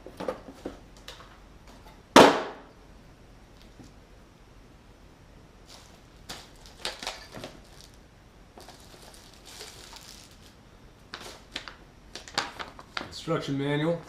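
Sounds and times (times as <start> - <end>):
packaging rustling and crinkling: 5.7 - 8.0, 8.6 - 13.3.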